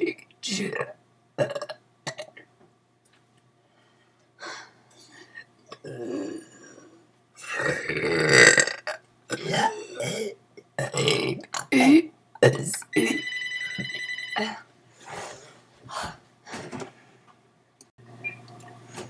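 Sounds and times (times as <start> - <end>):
person belching: 0.5 - 2.4, 5.7 - 6.8, 7.4 - 11.8.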